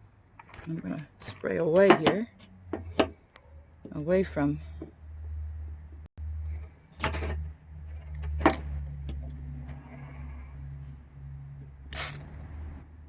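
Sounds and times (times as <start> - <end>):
aerosol can spraying: 11.9 - 12.4.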